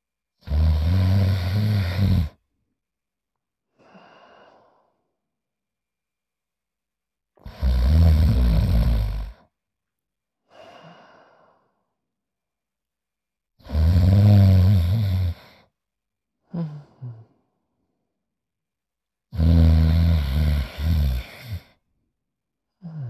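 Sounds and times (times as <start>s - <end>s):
loud rasping snores: 0.4s - 2.4s, 7.4s - 9.4s, 13.6s - 15.6s, 19.3s - 21.8s
breathy exhale: 10.5s - 11.8s.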